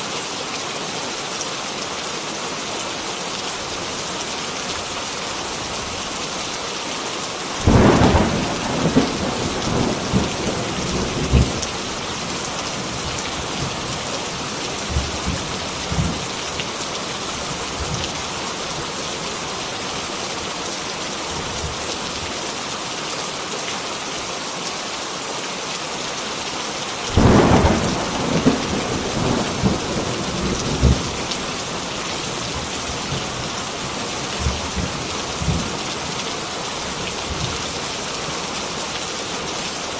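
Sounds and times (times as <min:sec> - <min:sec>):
heavy rain falling: 0:00.0 - 0:39.9
thunder rumbling: 0:07.6 - 0:16.3, 0:27.1 - 0:35.8.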